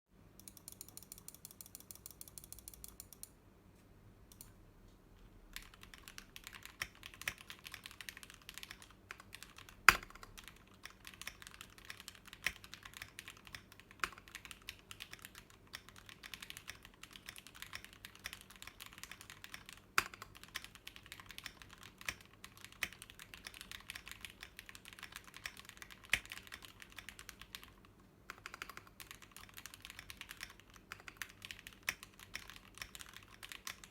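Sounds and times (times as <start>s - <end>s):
mechanical keyboard typing: 0.4s - 3.3s, 5.5s - 33.9s
rapid even ticking: 0.4s - 3.3s.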